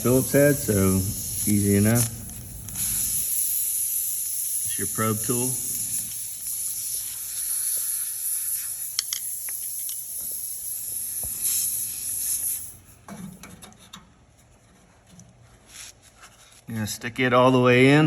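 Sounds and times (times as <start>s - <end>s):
air hissing from a tire: 0.0s - 13.2s.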